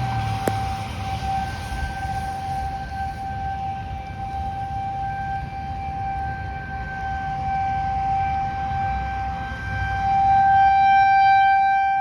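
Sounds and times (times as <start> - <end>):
warning siren steady tone: 0.0 - 12.0.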